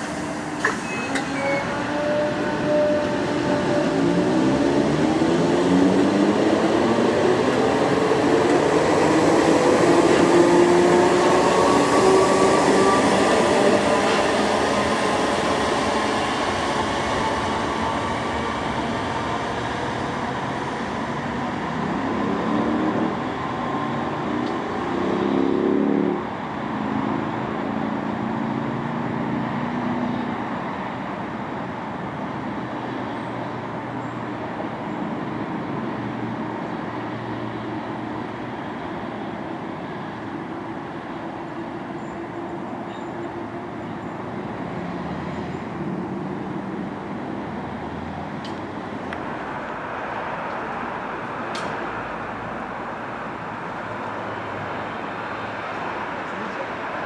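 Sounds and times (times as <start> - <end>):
train motor whine: 0.0 - 4.7
train running noise: 0.0 - 57.0.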